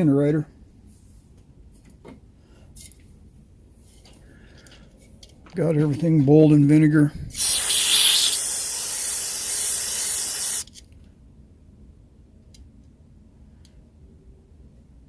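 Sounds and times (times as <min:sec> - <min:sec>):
loud spraying hiss: 0:07.3 - 0:10.7.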